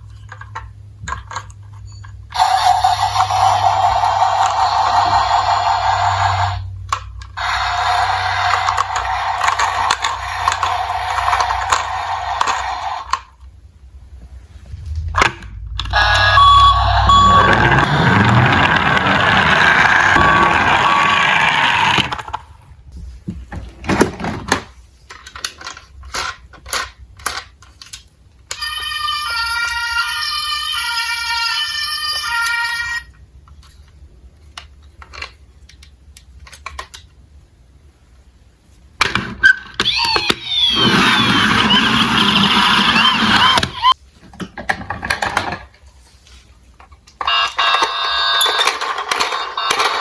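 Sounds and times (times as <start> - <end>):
toy cars rolling down slope: 2.3 - 13.4, 16.0 - 22.5, 39.8 - 44.0, 47.3 - 50.0
truck engine: 2.4 - 12.6, 14.7 - 22.4
toy cars clicking together: 2.4 - 13.3, 25.1 - 28.6
reversing beeps: 15.9 - 18.6.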